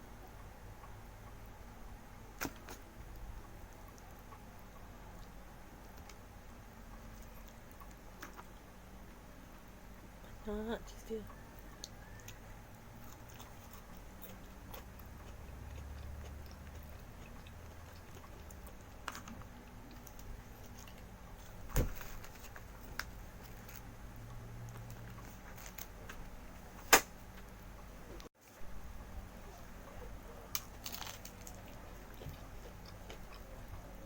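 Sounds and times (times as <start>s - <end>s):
person chewing: 11.3s - 21.6s, 29.5s - 34.0s.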